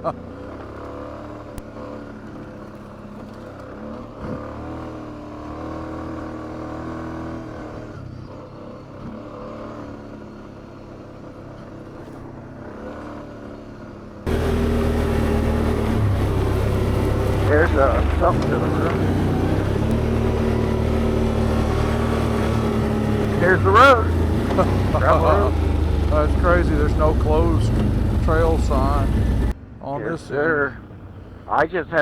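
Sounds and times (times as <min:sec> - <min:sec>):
atv engine running: 0:00.0 - 0:32.0.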